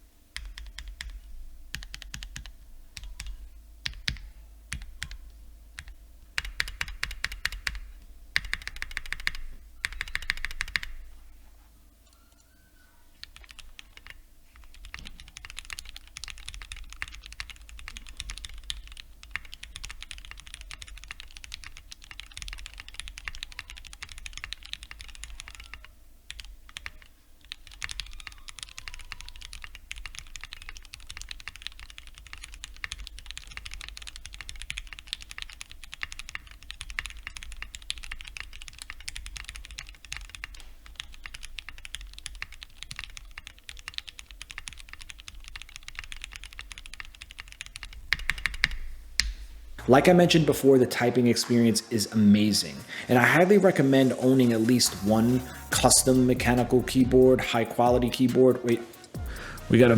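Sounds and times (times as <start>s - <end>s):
mechanical keyboard typing: 0.4s - 11.1s, 13.2s - 49.4s.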